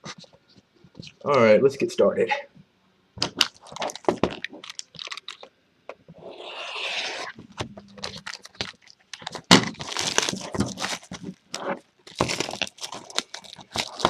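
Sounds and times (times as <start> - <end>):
plastic shrink wrap crinkling: 3.2 - 5.5, 7.1 - 14.0.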